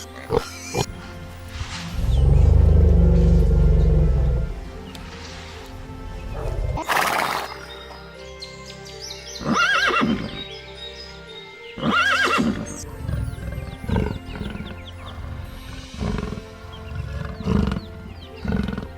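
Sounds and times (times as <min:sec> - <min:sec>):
background music: 0:00.0 - 0:18.9
horse whinnying: 0:09.4 - 0:10.5, 0:11.8 - 0:18.9.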